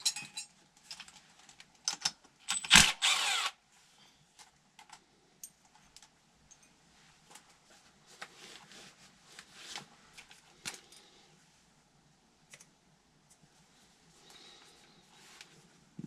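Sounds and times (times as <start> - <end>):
small parts and tools clicking: 0.0 - 3.5.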